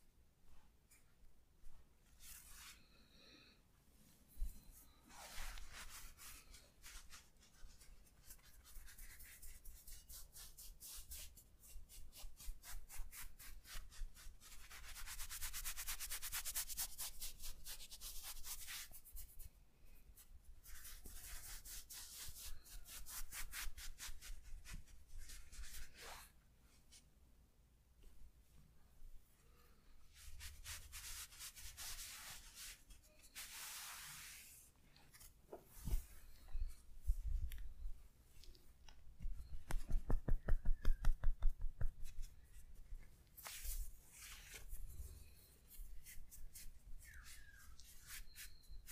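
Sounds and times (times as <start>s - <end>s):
hands rubbing over skin: 30.2s - 34.6s.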